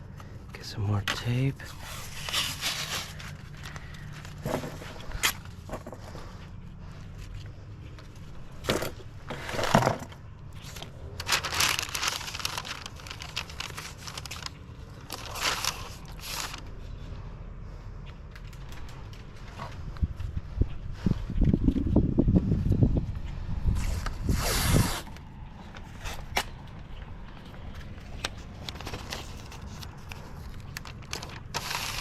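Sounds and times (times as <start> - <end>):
low wind rumble: 1.6 - 32.0
masking tape ripping off roll: 23.8 - 25.2, 31.2 - 32.0.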